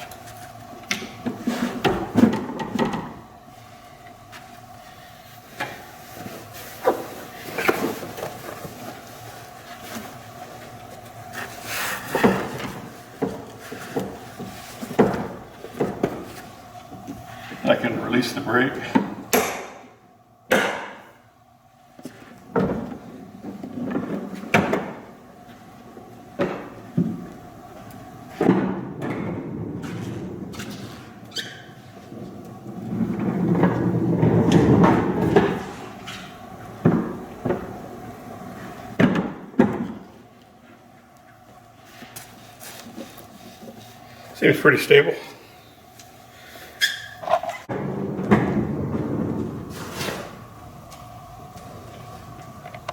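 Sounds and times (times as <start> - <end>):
cart knocks and clunks: 0.9 - 3.2, 28.3 - 37.8, 38.7 - 40.2, 47.2 - 50.4
cart wheels rumbling: 29.0 - 39.0.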